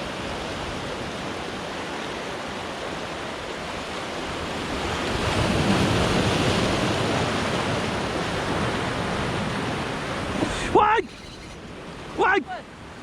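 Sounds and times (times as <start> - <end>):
waves washing against rocks: 0.0 - 13.0.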